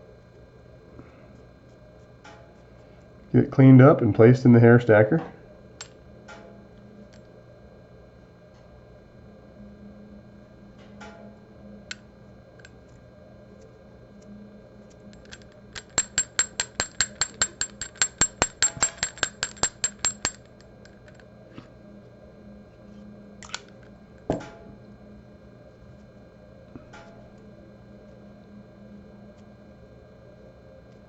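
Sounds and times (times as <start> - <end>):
hair stacker tapping on bench: 15.2 - 21.2.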